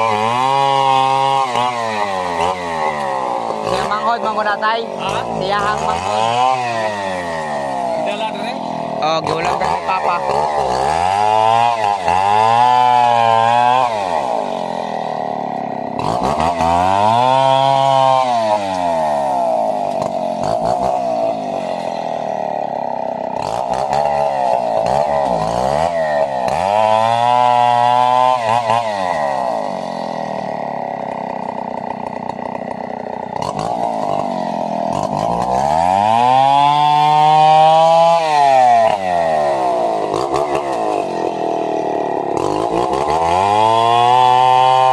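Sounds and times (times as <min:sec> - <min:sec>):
chainsaw revving cutting wood: 0:00.0 - 0:44.9.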